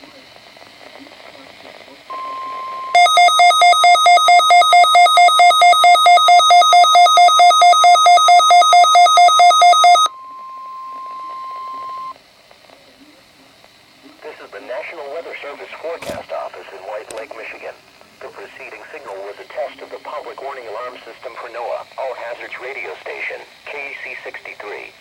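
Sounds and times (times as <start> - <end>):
buzzy electronic beeping: 2.1 - 12.1
steady alarm tone: 2.1 - 12.1.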